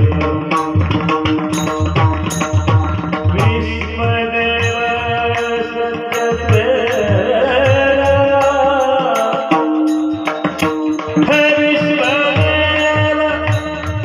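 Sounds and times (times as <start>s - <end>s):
steady held tones: 1.3s - 14.0s
person singing ornamented line: 3.3s - 10.5s.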